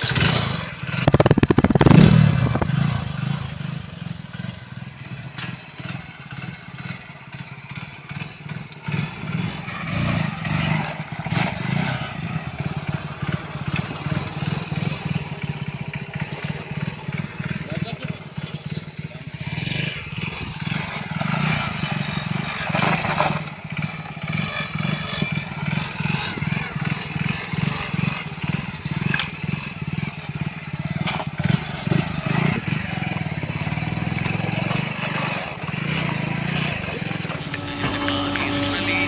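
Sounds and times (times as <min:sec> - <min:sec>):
diesel engine running: 0:01.0 - 0:04.3.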